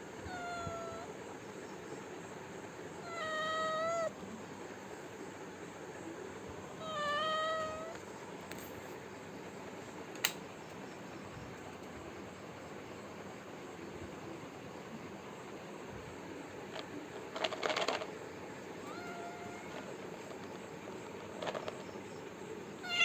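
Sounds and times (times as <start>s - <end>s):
cat meowing: 0.2s - 1.1s, 3.0s - 4.1s, 6.8s - 8.0s, 18.8s - 20.0s
sharp click: 10.2s - 10.4s.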